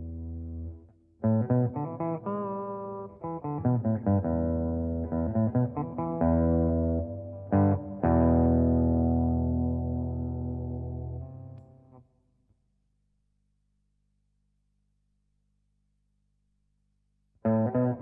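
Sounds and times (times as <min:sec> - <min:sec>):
overdriven electric guitar: 0:00.2 - 0:11.8, 0:17.4 - 0:18.0.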